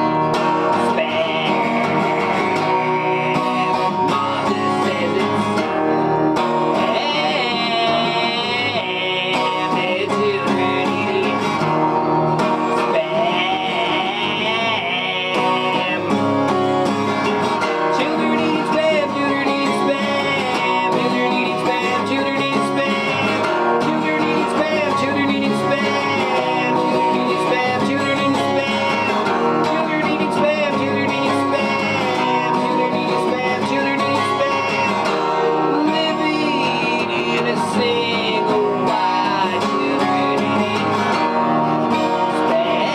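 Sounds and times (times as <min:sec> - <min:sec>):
country song with plucked guitar: 0:00.0 - 0:42.9.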